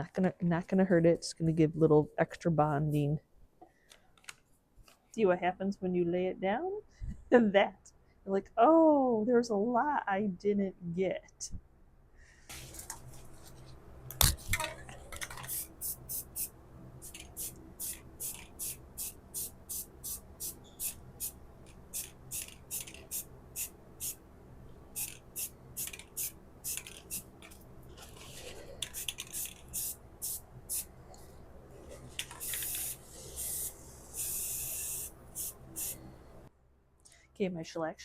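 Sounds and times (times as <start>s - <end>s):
hissing bursts: 32.4s - 36.1s.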